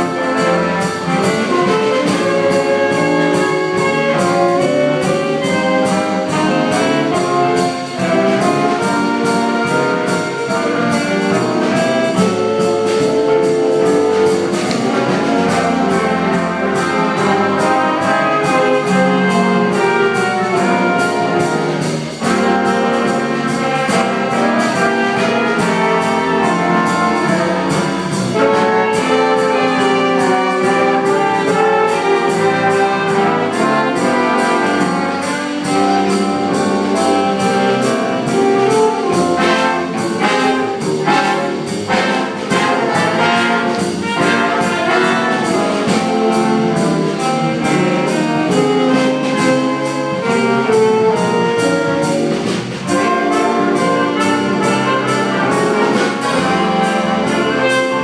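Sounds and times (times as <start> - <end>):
brass band playing jazz ballad: 0.0 - 58.0.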